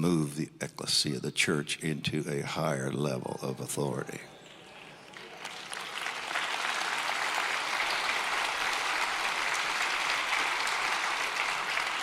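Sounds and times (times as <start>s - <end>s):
congregation applauding: 4.5s - 12.0s.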